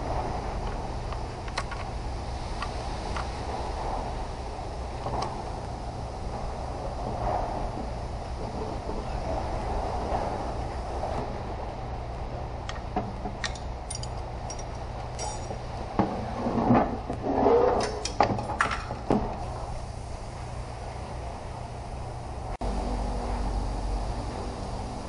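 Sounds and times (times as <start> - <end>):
steady low hum: 0.0 - 25.0
clicks and knocks of tools handled: 12.6 - 15.6, 17.8 - 19.0.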